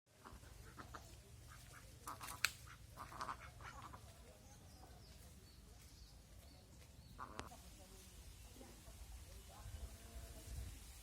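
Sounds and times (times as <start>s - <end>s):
fowl calling: 0.2s - 4.2s, 7.2s - 7.5s.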